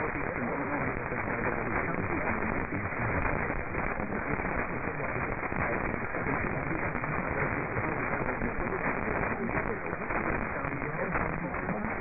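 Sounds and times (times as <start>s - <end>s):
faint crackles: 0.0s - 12.0s
radio static hiss: 0.0s - 12.0s.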